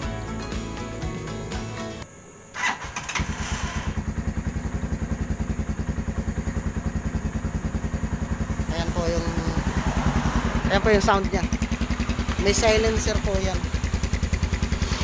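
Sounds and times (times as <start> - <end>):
starter motor turning: 2.6 - 4.2
motorcycle engine idling: 2.6 - 15.0.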